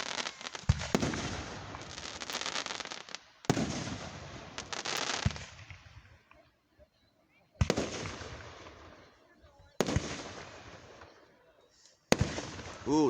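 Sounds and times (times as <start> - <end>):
fireworks booming: 0.0 - 6.2, 7.6 - 9.0, 9.8 - 11.1, 12.1 - 13.0
fireworks crackling: 0.0 - 6.5, 7.6 - 9.1, 9.7 - 13.0.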